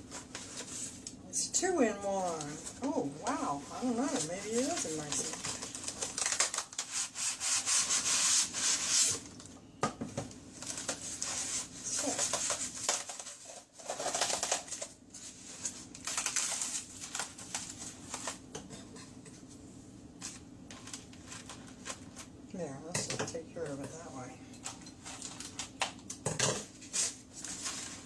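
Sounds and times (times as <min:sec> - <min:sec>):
packaging scraping: 0:02.2 - 0:09.4, 0:10.6 - 0:18.4, 0:20.2 - 0:22.3.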